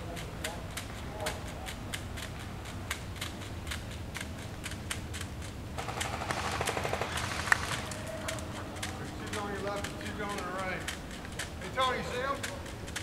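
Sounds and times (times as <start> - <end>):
sharp uneven clicks: 0.0 - 13.0
dense rustling crackle: 3.3 - 13.0.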